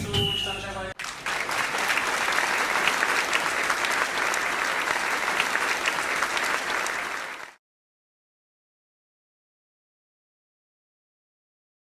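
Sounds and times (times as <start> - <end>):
rapid clapping: 1.0 - 7.6.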